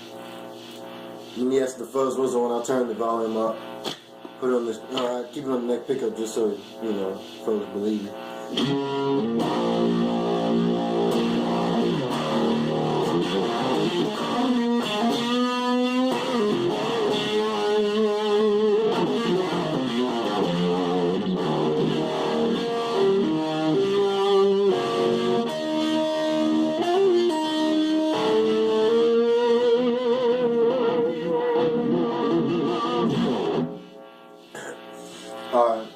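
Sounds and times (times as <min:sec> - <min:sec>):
fuzz electric guitar lead: 0:08.5 - 0:34.0.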